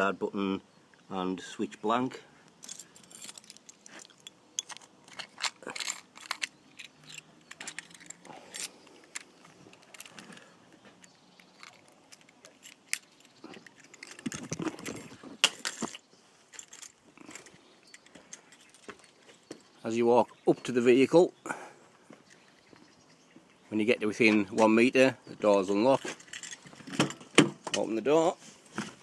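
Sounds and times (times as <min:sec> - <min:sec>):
keys jangling: 0:02.6 - 0:10.4, 0:26.0 - 0:27.1.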